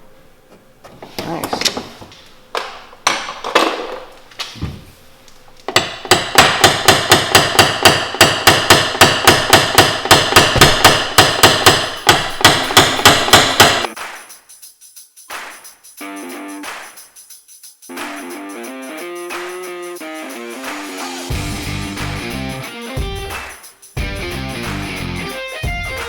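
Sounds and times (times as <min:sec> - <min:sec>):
small hammer tapping metal tool: 0:05.7 - 0:13.9.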